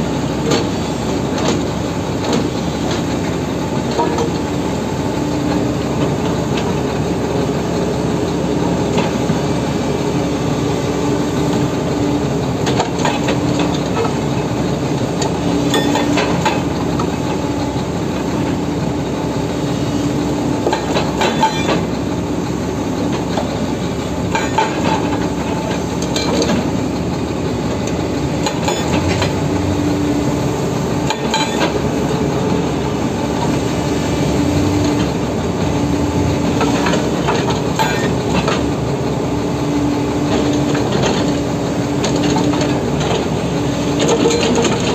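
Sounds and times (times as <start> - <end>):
excavator engine: 0.0 - 44.9
hydraulic breaker pounding rock: 11.4 - 33.6, 34.2 - 44.9.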